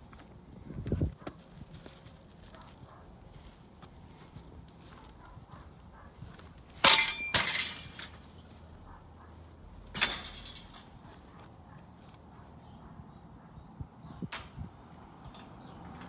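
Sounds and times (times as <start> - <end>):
sharp clattering impacts: 6.8 - 8.3, 9.8 - 11.2.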